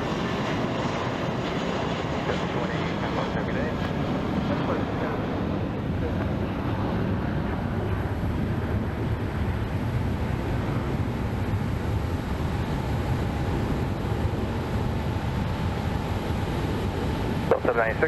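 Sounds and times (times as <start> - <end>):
jet engine rumble: 0.0 - 18.0
faint steady whine: 7.8 - 18.0.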